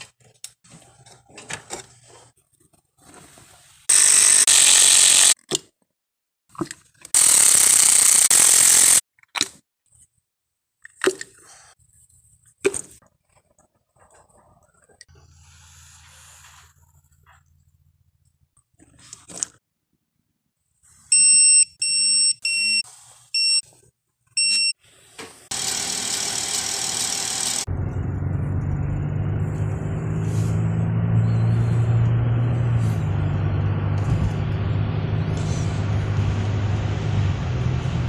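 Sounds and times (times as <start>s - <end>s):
electronic chime beeps: 21.1s - 22.8s.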